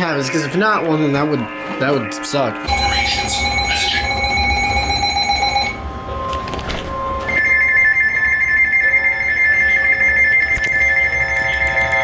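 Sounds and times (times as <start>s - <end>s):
electronic alert tones: 2.6s - 6.3s.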